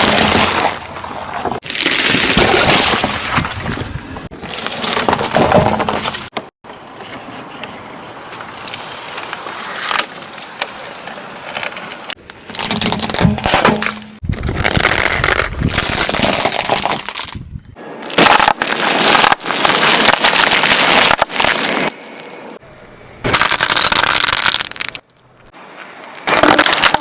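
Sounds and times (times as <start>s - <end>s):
objects crushed under car tyres: 0.0s - 3.8s, 4.4s - 6.3s, 12.5s - 17.4s, 18.0s - 22.0s, 23.2s - 25.1s, 26.2s - 27.0s.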